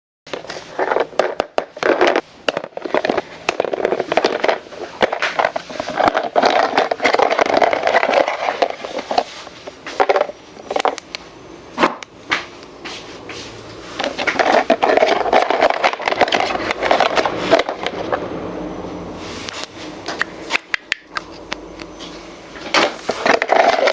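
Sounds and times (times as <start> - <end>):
plastic packaging crinkling: 0.3 - 11.0, 14.0 - 18.1.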